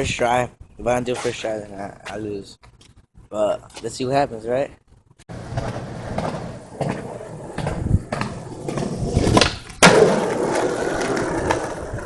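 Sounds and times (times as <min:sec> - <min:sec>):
skateboard wheels rolling: 0:05.3 - 0:12.0
skateboard clacks: 0:05.5 - 0:12.0
skateboard landing smack: 0:09.3 - 0:10.7.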